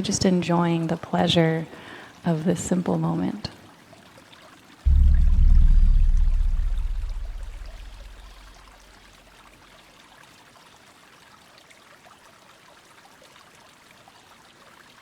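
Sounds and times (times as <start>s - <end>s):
low deep tone: 4.9s - 8.5s.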